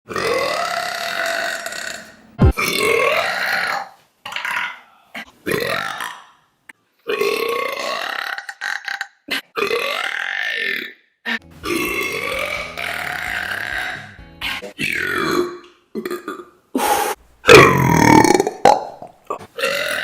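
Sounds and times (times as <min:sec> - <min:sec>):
woman burping: 0:14.8 - 0:16.5, 0:17.5 - 0:20.0.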